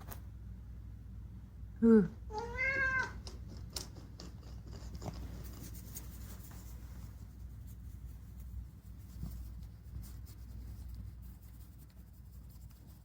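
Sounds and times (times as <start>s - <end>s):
cat meowing: 2.3s - 3.2s
faint scratching and rubbing: 3.1s - 13.0s.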